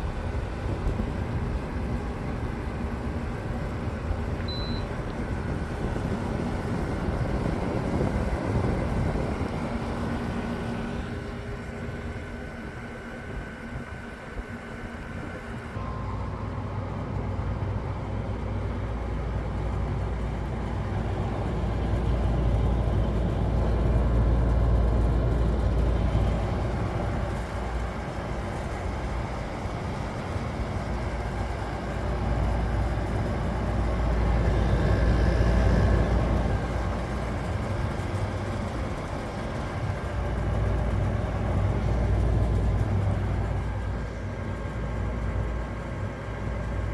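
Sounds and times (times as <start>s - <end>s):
fan rushing: 12.9s - 46.9s.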